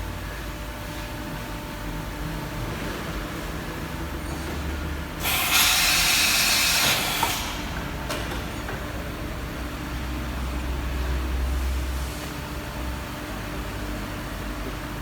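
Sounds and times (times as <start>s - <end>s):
milling machine humming: 3.6s - 11.2s.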